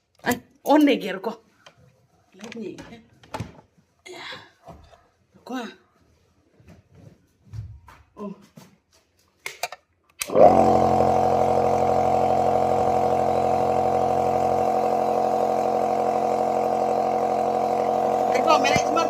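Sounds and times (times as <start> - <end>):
nebulizer motor humming: 10.2 - 19.0.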